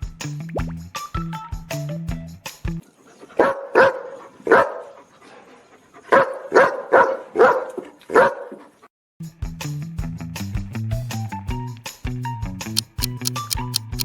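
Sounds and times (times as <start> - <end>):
dog barking: 3.4 - 5.0, 6.1 - 8.7.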